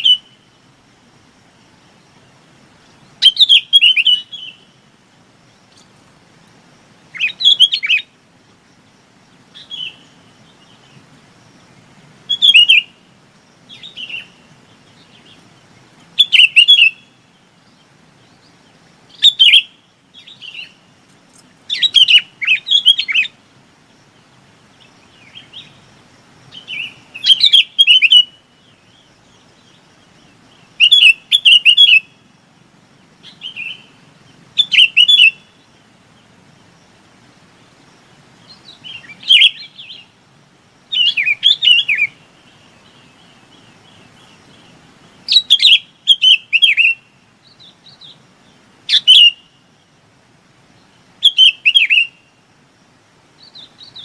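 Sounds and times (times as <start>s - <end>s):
bulbul calling: 0.0s - 0.6s, 2.9s - 4.8s, 7.1s - 8.2s, 9.4s - 11.1s, 12.2s - 23.5s, 26.5s - 32.3s, 33.2s - 35.7s, 38.4s - 40.2s, 40.9s - 48.2s, 48.8s - 49.7s, 51.2s - 52.4s.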